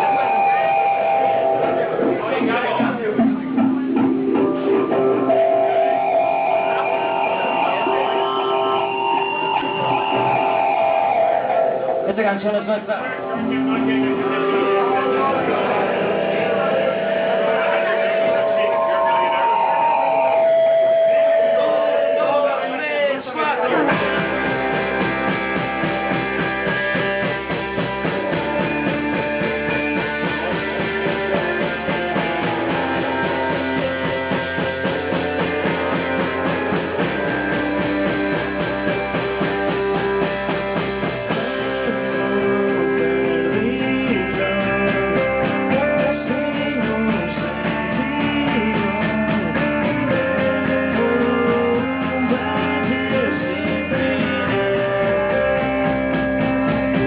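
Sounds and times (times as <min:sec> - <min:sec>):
drum kit steady beat: 0:00.0 - 0:12.4, 0:23.8 - 0:57.0
guitar: 0:00.0 - 0:57.0
rock band playing: 0:00.0 - 0:57.0.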